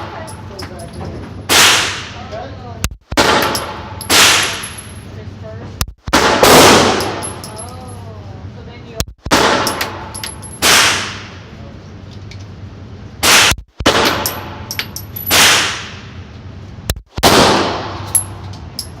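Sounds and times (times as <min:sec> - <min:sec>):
small metallic clinks: 0:00.2 - 0:01.0, 0:07.0 - 0:08.0, 0:10.1 - 0:10.6, 0:14.2 - 0:15.3, 0:18.1 - 0:19.0
pistol shots with ringing echo: 0:03.2 - 0:04.7.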